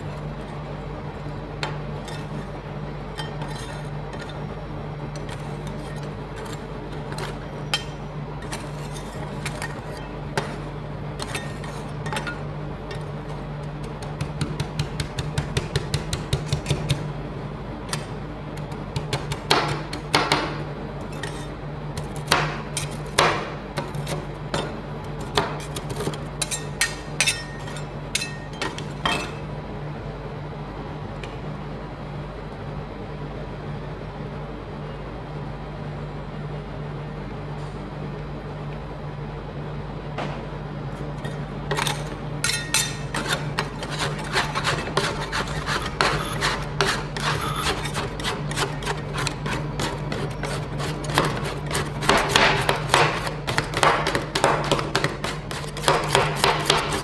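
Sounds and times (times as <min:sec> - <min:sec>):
steady low hum: 0:00.0 - 0:57.0
metal spatulas clacking on steel: 0:26.4 - 0:29.4, 0:41.7 - 0:45.5.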